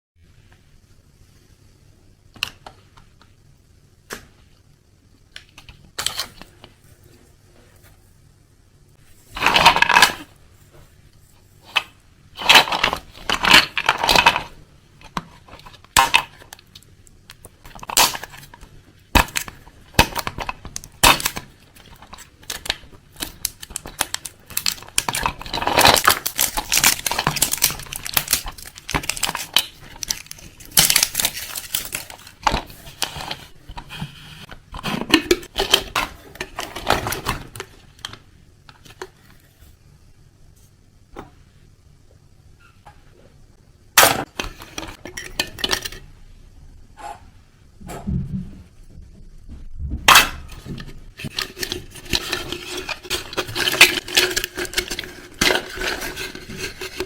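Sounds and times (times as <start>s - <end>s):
rustling scrapes: 50.5s - 57.0s.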